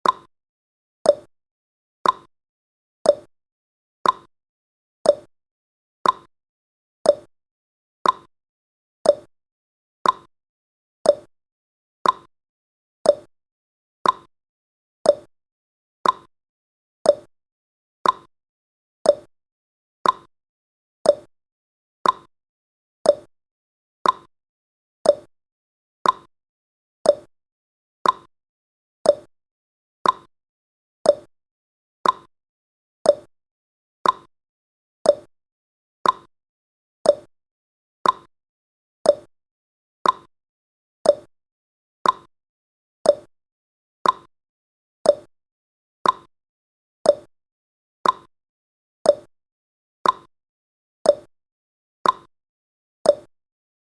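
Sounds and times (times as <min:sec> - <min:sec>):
countdown timer ticking: 0:29.1 - 0:29.3, 0:33.1 - 0:33.3, 0:35.1 - 0:35.3, 0:37.1 - 0:37.3, 0:38.0 - 0:38.3, 0:39.1 - 0:39.3, 0:41.1 - 0:41.3, 0:42.0 - 0:42.3, 0:43.1 - 0:43.3, 0:47.1 - 0:47.3.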